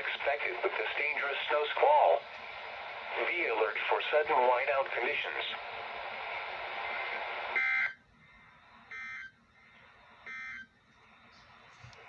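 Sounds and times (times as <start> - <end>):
radio hiss: 0.0 - 7.7.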